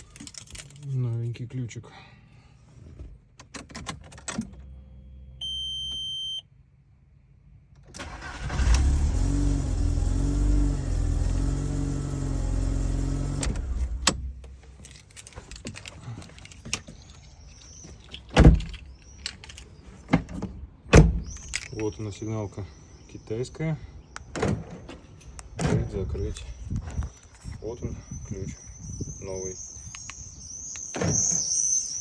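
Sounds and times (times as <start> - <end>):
short electronic beep: 5.4 - 6.4, 28.2 - 32.0
car engine starting and running: 7.7 - 16.7.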